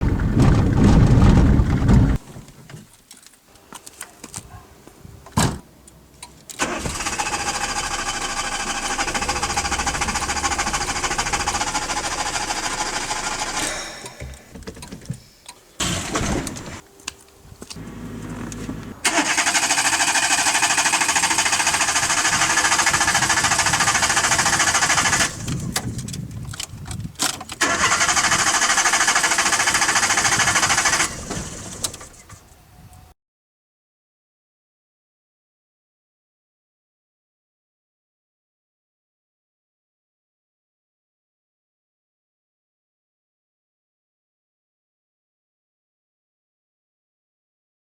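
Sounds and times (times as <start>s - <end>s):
starter motor cranking engine: 6.6s - 14.5s, 15.8s - 16.8s, 17.8s - 25.7s, 27.6s - 32.4s.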